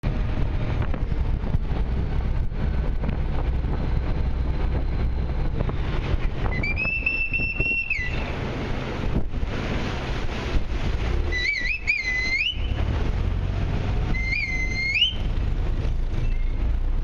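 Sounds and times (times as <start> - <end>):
boat engine rumbling: 0.0 - 17.0
wind on microphone: 0.1 - 17.0
long whistle blast: 6.6 - 8.4, 11.3 - 12.8, 14.1 - 15.3.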